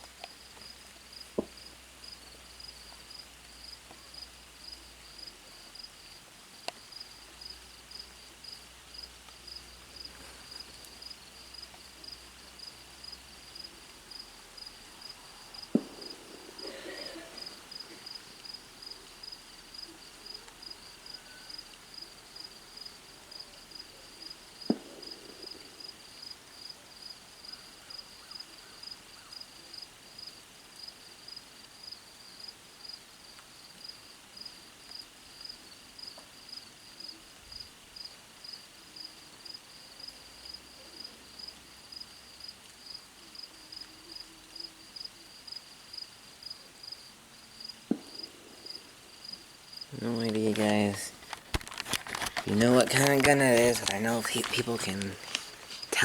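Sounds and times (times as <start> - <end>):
insects chirping: 0.2 - 56.0
distant gunshots echoing: 15.7 - 17.9, 24.6 - 26.0, 47.9 - 49.0.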